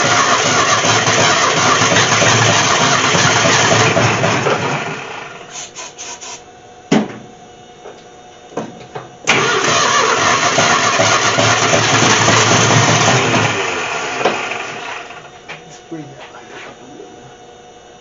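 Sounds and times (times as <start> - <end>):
car engine running: 0.0 - 5.4, 9.3 - 15.2
engine coughing and popping: 9.3 - 13.6.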